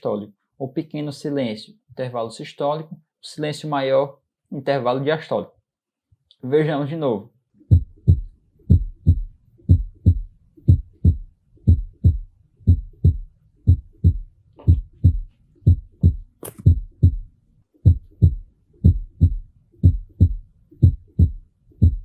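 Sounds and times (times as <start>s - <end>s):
heartbeat: 7.7s - 22.0s.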